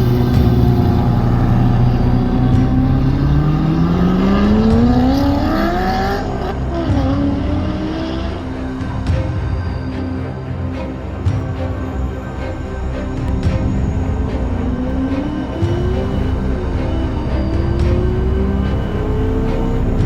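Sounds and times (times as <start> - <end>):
car engine accelerating: 0.0 - 8.9, 13.1 - 20.0.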